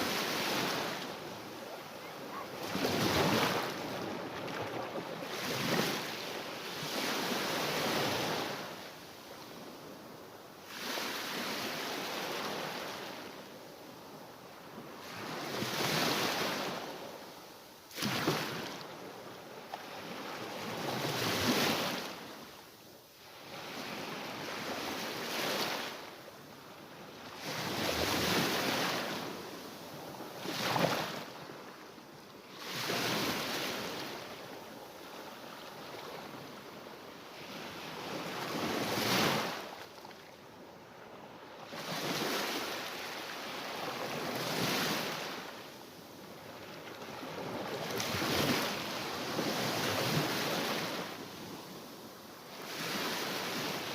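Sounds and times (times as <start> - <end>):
waves breaking on shore: 0.0 - 13.4, 17.9 - 22.5, 23.3 - 53.9.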